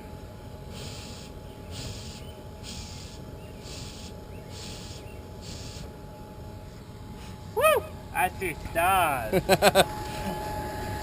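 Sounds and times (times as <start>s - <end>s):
person blowing hissing breaths: 0.7s - 6.0s.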